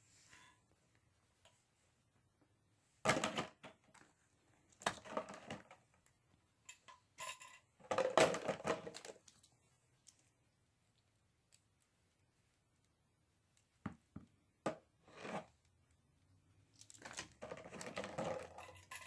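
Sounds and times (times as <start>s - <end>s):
tools and cases clattering: 16.9s - 19.0s.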